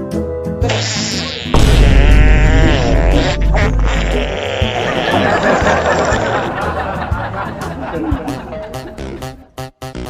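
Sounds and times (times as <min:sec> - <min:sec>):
background music: 0:00.0 - 0:10.0
people chattering: 0:04.8 - 0:09.4.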